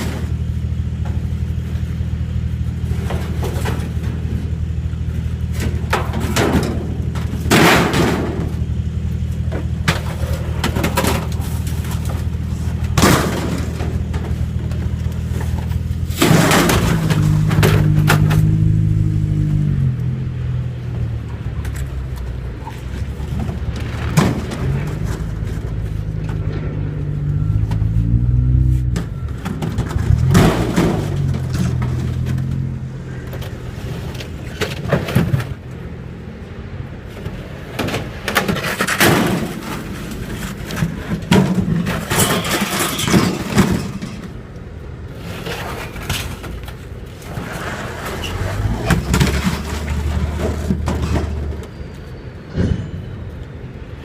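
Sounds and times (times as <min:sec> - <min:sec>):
clunks and rattles: 0:00.0 - 0:20.0, 0:20.6 - 0:35.8, 0:37.1 - 0:53.5
truck engine running: 0:00.0 - 0:37.7.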